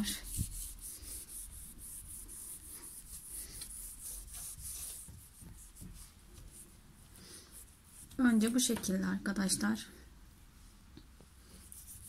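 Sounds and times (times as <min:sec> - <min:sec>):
potato scrubbing on wooden door: 0:00.0 - 0:06.7.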